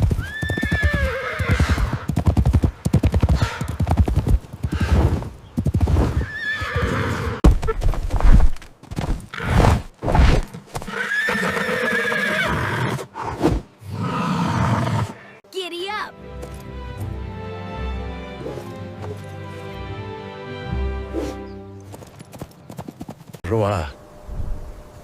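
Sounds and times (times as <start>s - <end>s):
hooves clip-clopping: 0.0s - 9.4s, 16.3s - 17.2s, 18.5s - 19.8s, 21.7s - 23.4s
horse neighing: 0.2s - 2.1s, 6.1s - 7.4s, 10.8s - 13.2s, 13.9s - 15.4s.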